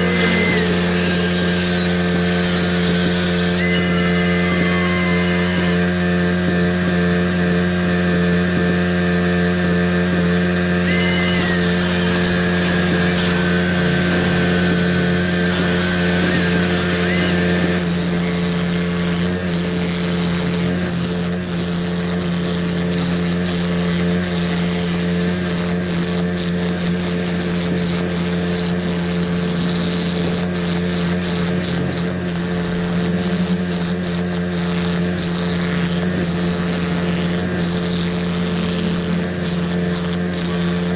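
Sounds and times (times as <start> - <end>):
thin high whine: 0.0 - 6.6, 10.8 - 21.1.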